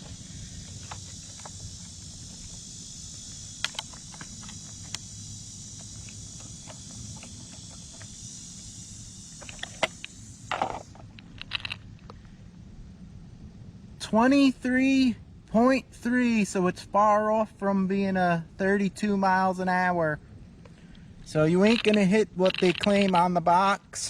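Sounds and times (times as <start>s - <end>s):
handling clicks and rustles: 0.0s - 8.3s, 9.3s - 12.3s, 20.6s - 23.4s
high-pitched insect buzz: 0.0s - 12.0s, 21.3s - 23.3s.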